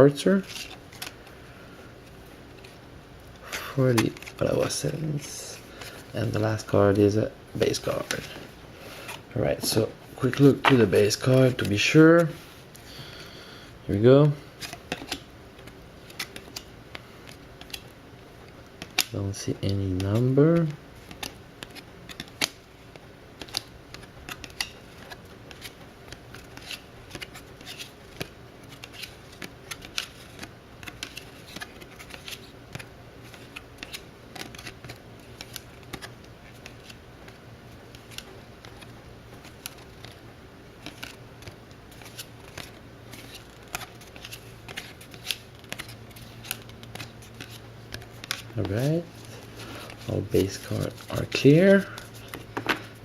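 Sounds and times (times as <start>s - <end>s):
faint steady hum: 0.0s - 53.0s
cards clicking and snapping: 18.8s - 40.2s, 40.8s - 52.9s.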